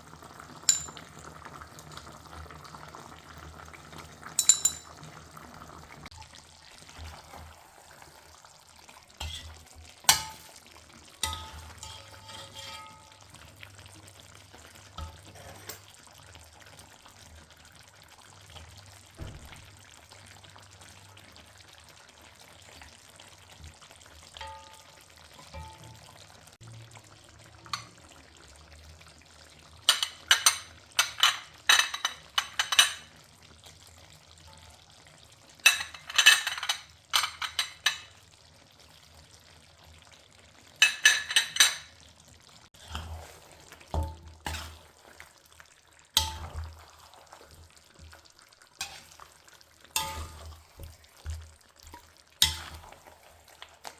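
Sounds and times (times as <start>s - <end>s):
metal utensil clinking on pan: 0.6s - 1.1s, 4.3s - 5.1s, 9.2s - 10.6s, 11.2s - 13.5s, 15.0s - 16.0s, 24.4s - 26.1s, 27.7s - 28.0s, 29.9s - 33.2s, 35.6s - 38.2s, 40.8s - 42.0s, 43.9s - 44.8s, 46.2s - 46.7s, 48.8s - 49.2s, 50.0s - 50.9s, 51.8s - 52.9s.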